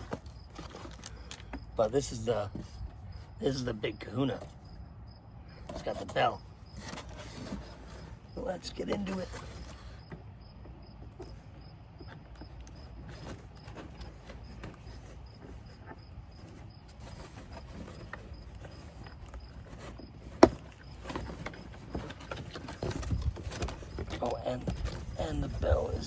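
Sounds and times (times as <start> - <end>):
packaging rustling and knocking: 12.0 - 26.0.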